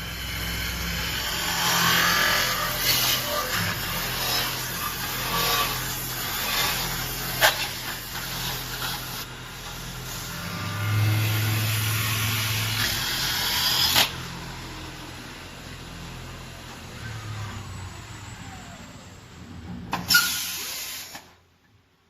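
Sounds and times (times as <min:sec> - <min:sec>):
machine motor hum: 0:00.0 - 0:20.1
high hiss: 0:20.1 - 0:21.4.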